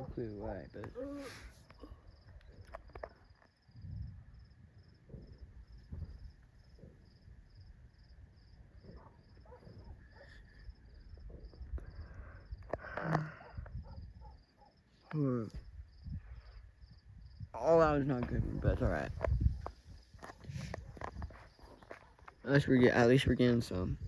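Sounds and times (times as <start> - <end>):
crickets chirping: 0.0 - 24.0
dull thuds: 3.8 - 10.2.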